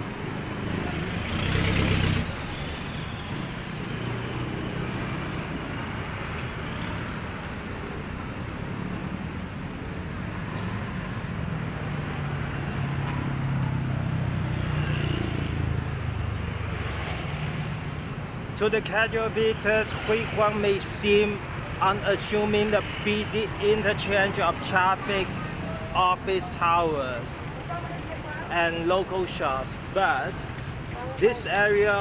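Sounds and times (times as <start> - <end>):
road traffic rumble: 0.0 - 32.0.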